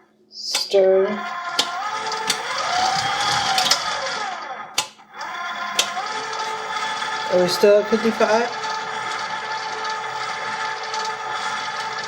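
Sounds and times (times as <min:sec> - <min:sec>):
sharp clicks: 0:00.4 - 0:00.8, 0:01.6 - 0:04.2, 0:04.8 - 0:06.6
stand mixer motor whine: 0:00.5 - 0:12.0.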